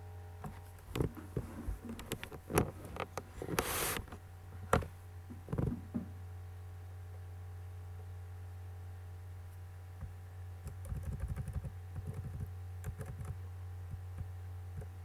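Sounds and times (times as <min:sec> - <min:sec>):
low electrical hum: 0:00.0 - 0:15.0
short hiss: 0:03.5 - 0:04.1
keyboard typing clicks: 0:10.6 - 0:13.4.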